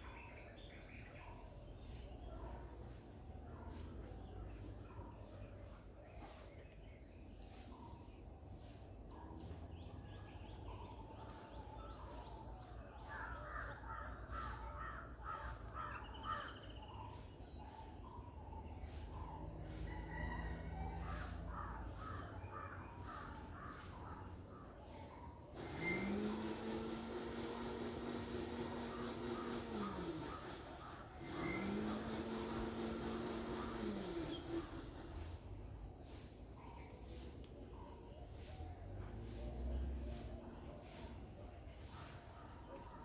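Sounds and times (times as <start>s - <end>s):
birds calling harshly: 9.5s - 38.4s.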